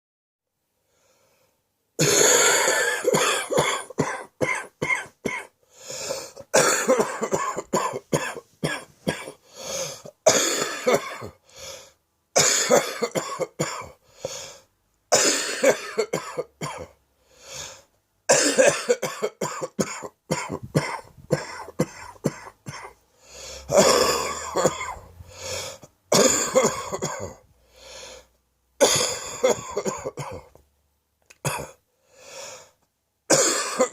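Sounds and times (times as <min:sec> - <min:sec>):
man coughing: 0:02.0 - 0:09.4, 0:10.0 - 0:11.4, 0:12.4 - 0:14.0, 0:15.1 - 0:17.0, 0:18.3 - 0:23.0, 0:23.6 - 0:25.1, 0:26.1 - 0:27.4, 0:28.8 - 0:30.6, 0:31.4 - 0:31.8, 0:33.3 - 0:33.9.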